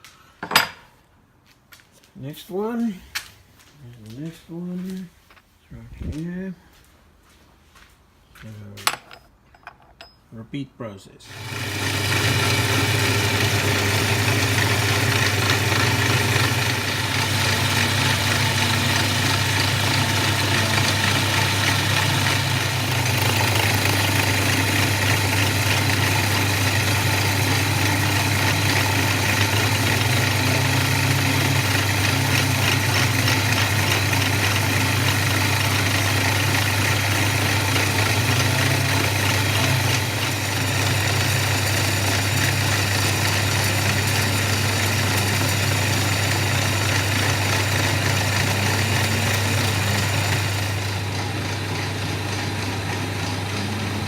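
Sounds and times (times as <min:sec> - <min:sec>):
milling machine running: 0:11.3 - 0:54.0.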